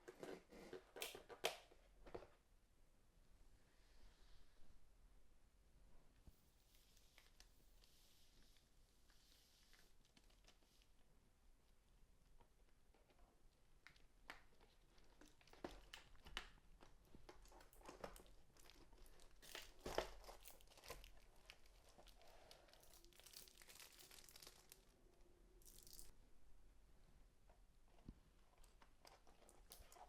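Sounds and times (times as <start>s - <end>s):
plastic wrap rustling and tearing: 14.9s - 25.0s.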